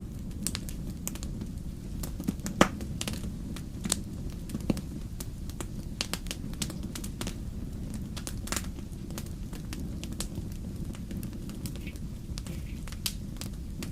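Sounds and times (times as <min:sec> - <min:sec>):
fire crackling and popping: 0:00.0 - 0:13.9.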